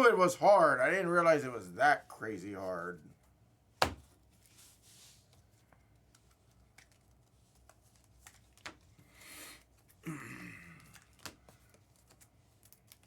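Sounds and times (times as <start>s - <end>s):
light clicks and taps of cards: 5.3s - 9.0s, 10.8s - 13.0s.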